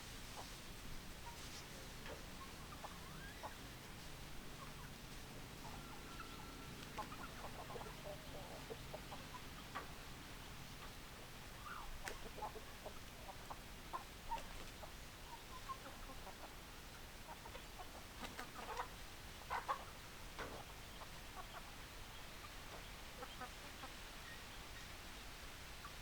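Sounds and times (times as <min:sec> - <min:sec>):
faint background hiss: 0:00.0 - 0:26.0
chickens clucking: 0:00.2 - 0:24.4.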